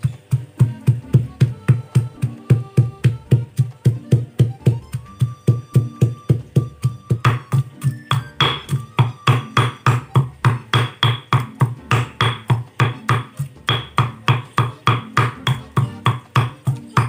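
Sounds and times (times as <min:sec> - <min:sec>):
faint background music: 0:00.0 - 0:17.0
kitchen utensil knocking: 0:07.2 - 0:17.0.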